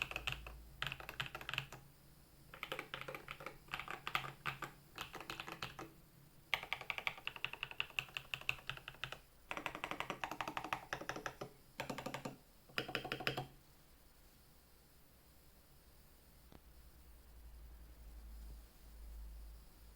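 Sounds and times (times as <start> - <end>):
mechanical keyboard typing: 0.0 - 1.9, 2.5 - 13.6.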